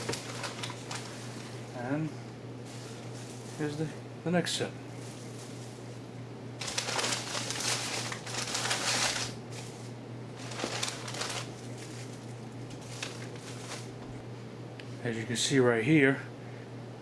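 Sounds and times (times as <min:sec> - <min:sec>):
packaging rustling and crinkling: 0:00.0 - 0:01.8, 0:02.6 - 0:04.0, 0:04.9 - 0:14.2
low electrical hum: 0:00.0 - 0:17.0.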